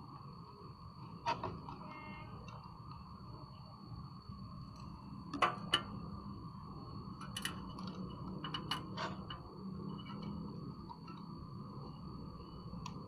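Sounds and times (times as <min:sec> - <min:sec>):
faint high whine: 0:00.0 - 0:13.0.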